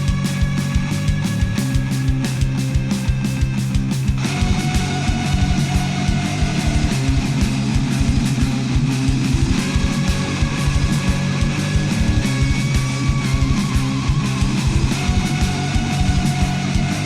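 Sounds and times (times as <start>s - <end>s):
distorted electric guitars: 0.0s - 17.0s
fast driving drums: 0.0s - 17.0s.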